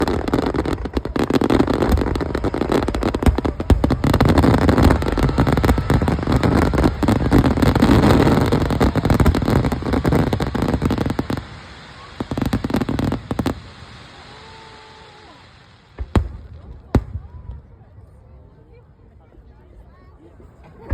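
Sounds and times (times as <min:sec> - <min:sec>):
fireworks bangs and crackles: 0:00.0 - 0:18.2.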